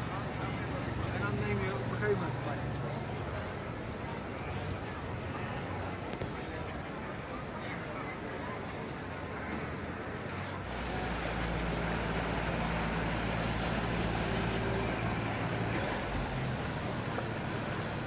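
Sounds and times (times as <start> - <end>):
motorboat engine humming: 10.6 - 18.0
water wash: 10.6 - 18.0.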